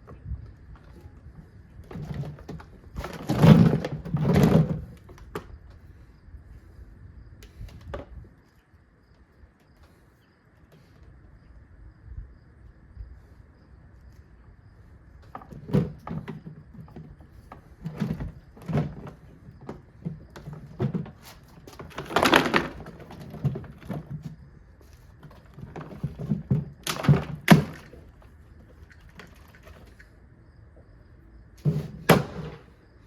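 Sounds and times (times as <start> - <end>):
plastic being knocked and broken: 17.8 - 24.3, 25.5 - 28.0, 31.6 - 32.6
plastic cracking burst: 21.9 - 23.0.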